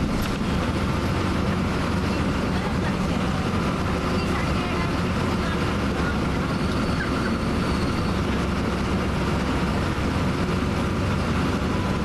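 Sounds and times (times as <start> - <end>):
bus engine rumble: 0.0 - 12.0
road noise: 0.0 - 12.0.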